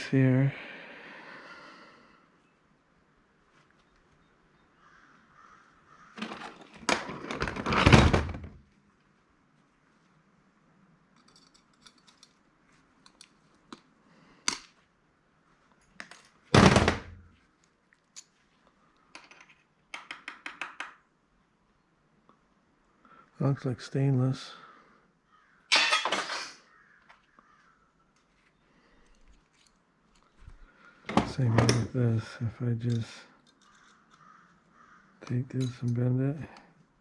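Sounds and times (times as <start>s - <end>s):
loud clatter of parts: 6.2s - 8.6s, 16.0s - 17.2s, 25.7s - 26.6s
heavy thunk: 16.6s - 17.2s.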